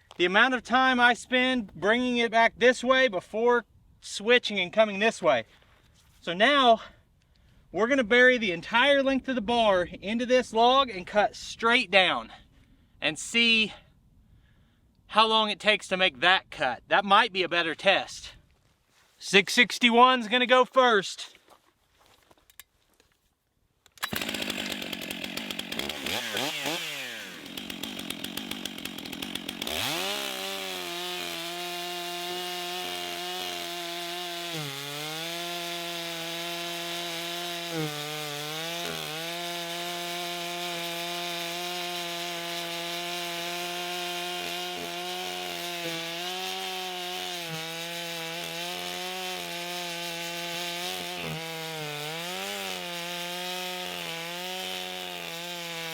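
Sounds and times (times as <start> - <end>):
chainsaw cutting through log: 24.0 - 55.9.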